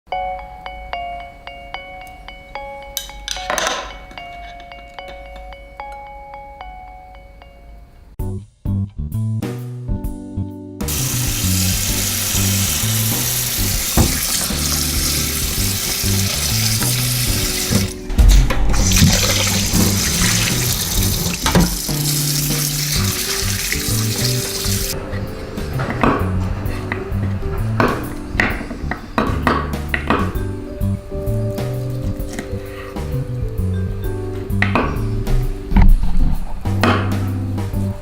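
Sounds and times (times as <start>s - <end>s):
light background music: 0.1s - 38.0s
tap water running into sink: 10.9s - 18.0s, 18.8s - 25.0s.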